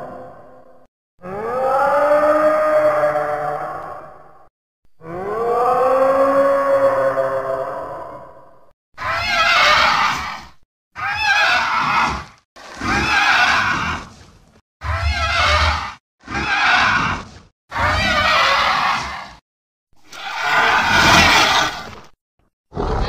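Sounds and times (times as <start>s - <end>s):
wavering monster cries: 1.2s - 4.3s, 5.0s - 10.4s, 14.8s - 19.4s.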